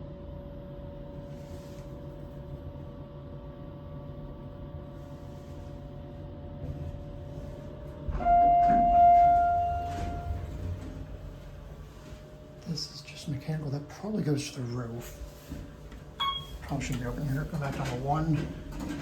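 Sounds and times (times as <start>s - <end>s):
elevator hum: 0.9s - 19.0s
electronic elevator chime: 8.2s - 10.5s, 16.2s - 16.6s.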